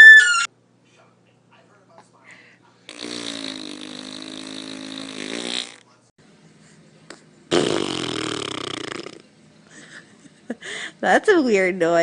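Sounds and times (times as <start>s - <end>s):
buzzing fart sound effect: 2.9s - 5.8s, 7.5s - 9.3s.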